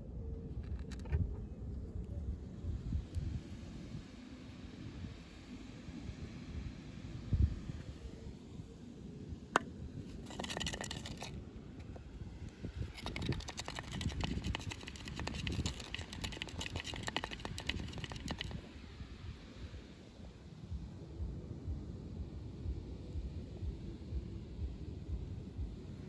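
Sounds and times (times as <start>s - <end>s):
hands rubbing on box: 10.1s - 11.3s, 12.9s - 18.6s.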